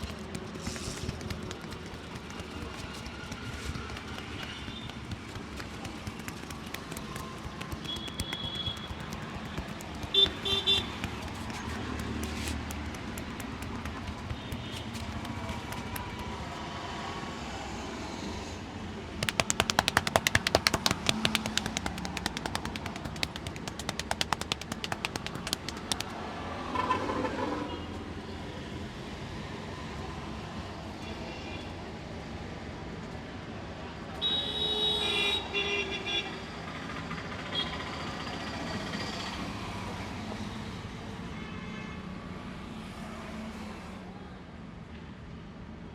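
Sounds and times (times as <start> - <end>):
hands slapping and tapping head: 0.0 - 16.6, 19.2 - 26.2
street noise: 0.0 - 45.9.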